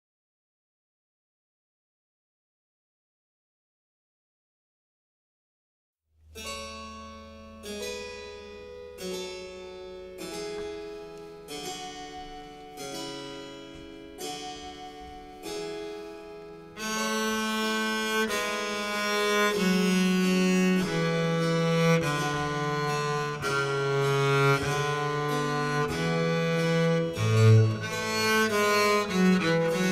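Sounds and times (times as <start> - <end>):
bowed strings: 6.2 - 29.9
harpsichord chords: 6.4 - 29.9.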